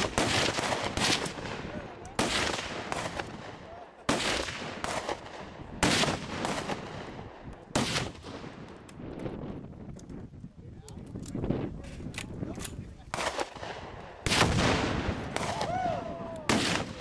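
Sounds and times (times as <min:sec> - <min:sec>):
gunshots with long echo: 0:00.0 - 0:08.9, 0:13.1 - 0:17.0.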